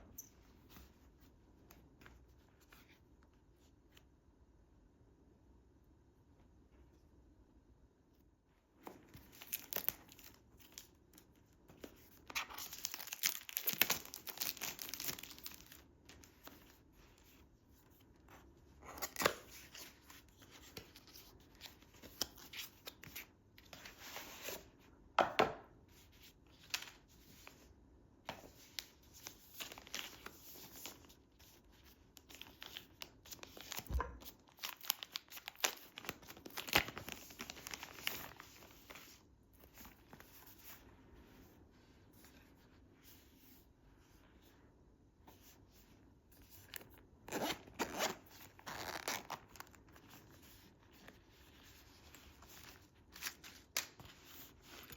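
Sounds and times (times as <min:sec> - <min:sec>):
plastic and paper crinkling: 0:08.8 - 0:16.8, 0:28.8 - 0:40.8.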